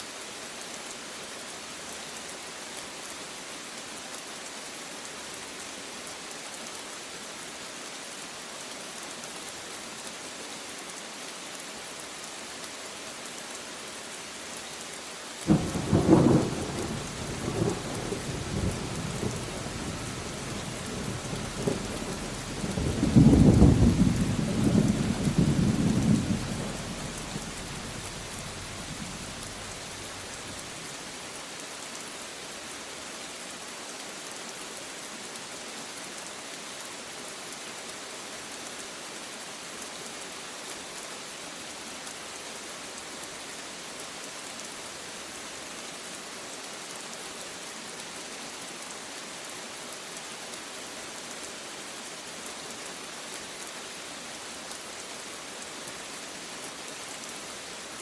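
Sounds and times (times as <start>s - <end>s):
steady rain: 0.0s - 58.0s
thunder rumbling: 15.5s - 30.5s.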